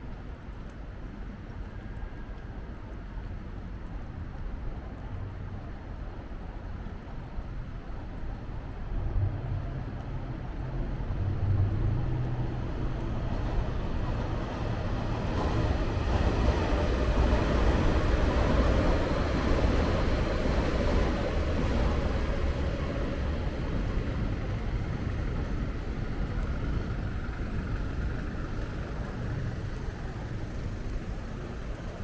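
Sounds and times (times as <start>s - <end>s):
street traffic rumble: 7.6s - 32.0s.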